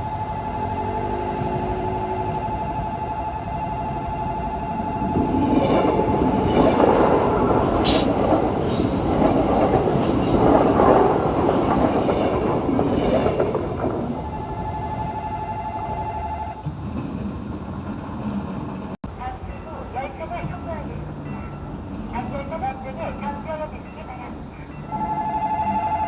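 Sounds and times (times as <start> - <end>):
train passing with wheel noise: 0.0 - 26.0
level crossing warning bell: 19.1 - 26.0.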